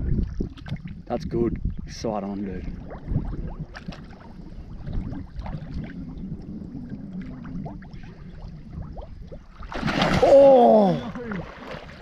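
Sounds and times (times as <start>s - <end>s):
shallow water lapping and trickling: 0.0s - 12.0s
water drips and bubbling: 0.0s - 12.0s.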